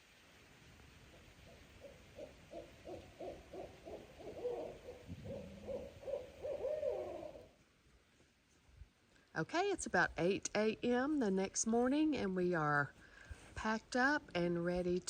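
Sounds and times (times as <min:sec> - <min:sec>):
owl hooting: 0:01.1 - 0:07.6.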